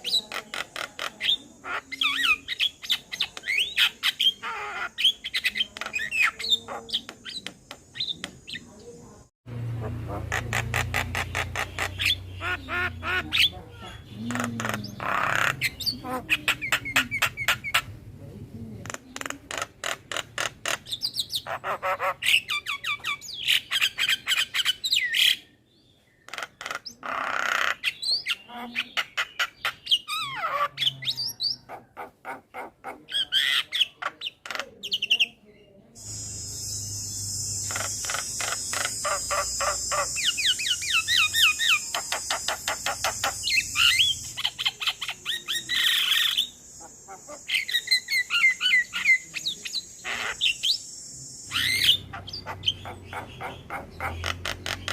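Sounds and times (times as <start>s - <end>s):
myna bird calling: 0.0s - 54.9s
harsh rasping bird call: 36.0s - 54.9s.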